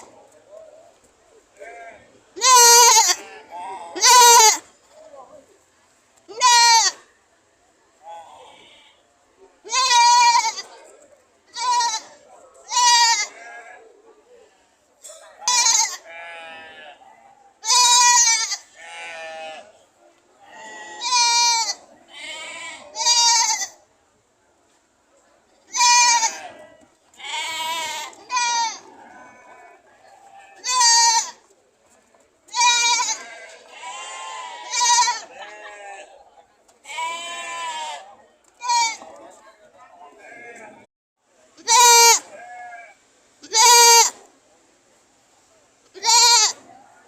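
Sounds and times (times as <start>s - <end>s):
goats bleating: 1.6s - 4.6s, 6.3s - 7.0s, 9.7s - 10.7s, 11.5s - 13.7s, 15.4s - 17.0s, 17.6s - 19.7s, 20.5s - 23.8s, 25.7s - 31.4s, 32.5s - 36.1s, 36.8s - 39.1s, 41.6s - 44.2s, 46.0s - 46.6s.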